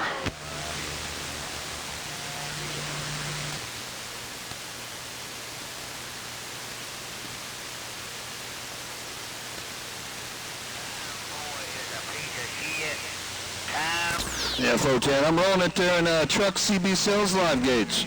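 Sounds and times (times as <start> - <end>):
radio static hiss: 0.0 - 18.0.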